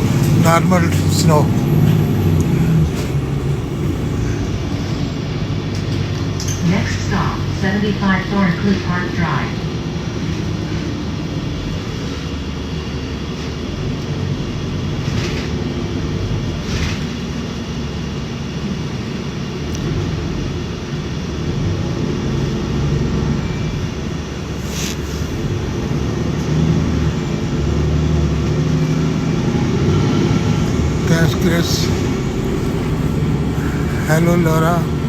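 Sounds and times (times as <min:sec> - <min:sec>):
bus engine and road rumble: 0:00.0 - 0:35.0
brief hisses: 0:24.6 - 0:25.4.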